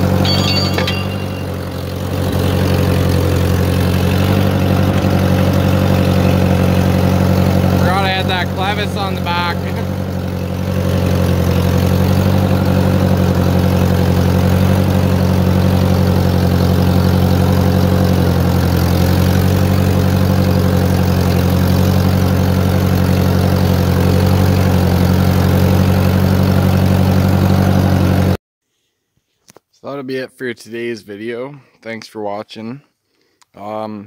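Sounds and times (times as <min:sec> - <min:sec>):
tractor engine running steadily: 0:00.0 - 0:28.4.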